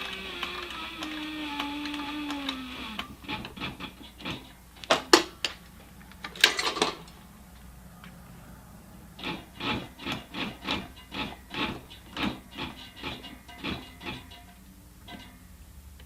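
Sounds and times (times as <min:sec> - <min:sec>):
machine motor hum winding down: 0:00.0 - 0:04.8, 0:05.7 - 0:12.9
handling clicks and knocks: 0:00.0 - 0:08.2, 0:09.2 - 0:15.4.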